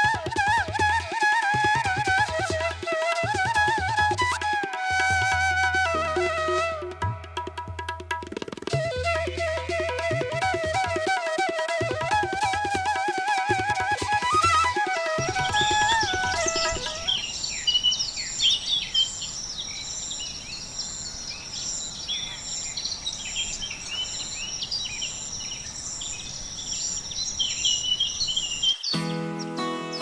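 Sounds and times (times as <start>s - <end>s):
instrumental music: 0.0s - 17.2s, 29.0s - 30.0s
birds chirping and calling: 15.2s - 29.0s.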